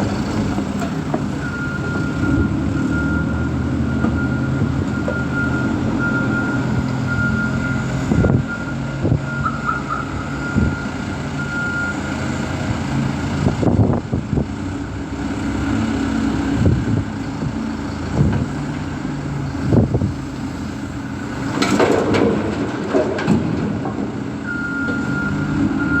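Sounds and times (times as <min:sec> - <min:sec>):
heavy diesel machinery running: 0:00.0 - 0:26.0
reversing alarm beeping: 0:01.3 - 0:12.3, 0:24.4 - 0:26.0
clanks and knocks: 0:21.4 - 0:25.0.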